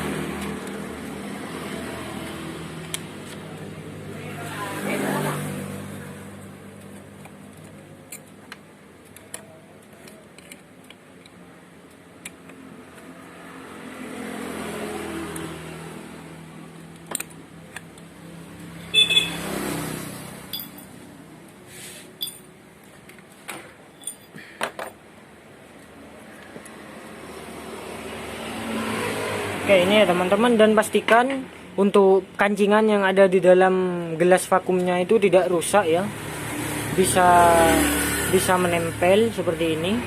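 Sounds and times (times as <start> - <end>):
metallic tool clicks and clinks: 20.5 - 20.9, 22.2 - 22.5, 24.0 - 25.0.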